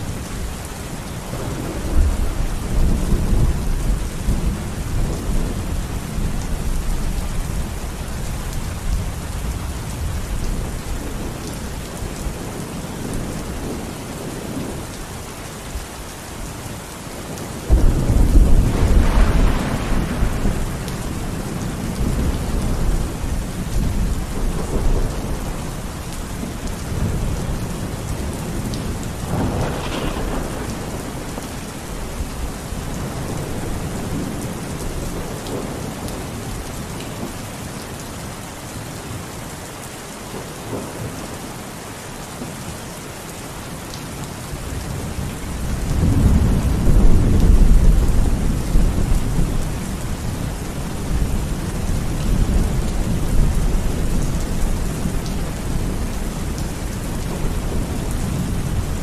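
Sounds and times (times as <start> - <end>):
steady rain: 0.0 - 59.0
thunder rumbling: 1.3 - 7.9, 17.3 - 36.7, 44.8 - 59.0.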